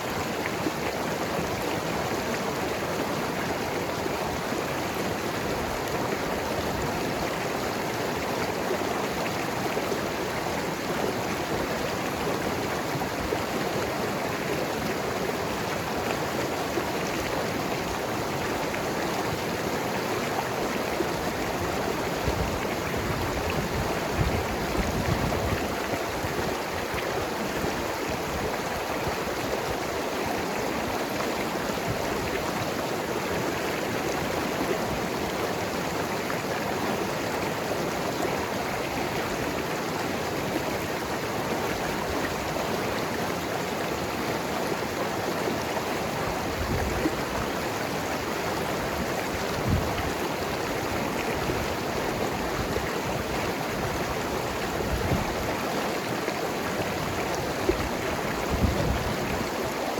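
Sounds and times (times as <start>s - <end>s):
river rushing over rocks: 0.0s - 59.9s.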